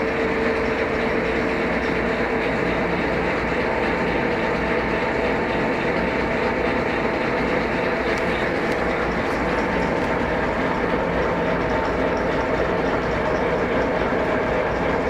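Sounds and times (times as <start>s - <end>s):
milling machine whirring: 7.6s - 12.9s.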